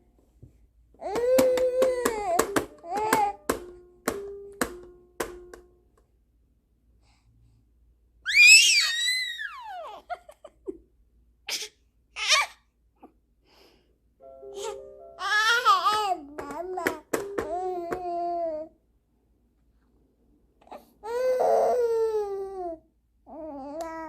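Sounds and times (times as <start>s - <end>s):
baby squealing: 8.3s - 10.1s
baby babbling: 14.6s - 18.7s, 20.7s - 24.0s.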